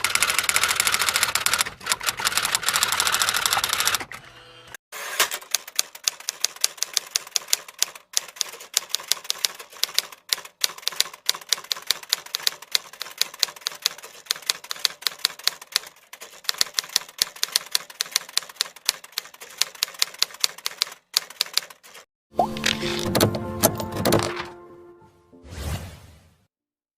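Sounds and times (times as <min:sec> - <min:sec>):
manual typewriter typing: 0:00.0 - 0:04.2, 0:05.2 - 0:24.5.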